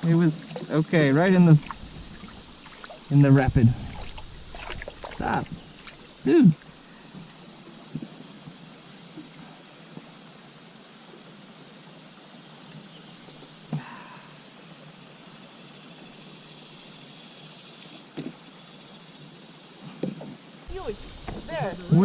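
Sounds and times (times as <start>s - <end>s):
creek water flowing: 0.0s - 9.0s, 20.7s - 22.0s.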